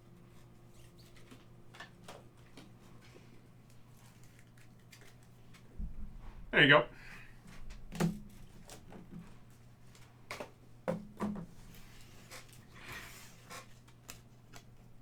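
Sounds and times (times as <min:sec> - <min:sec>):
packaging rustling: 0:00.7 - 0:05.7.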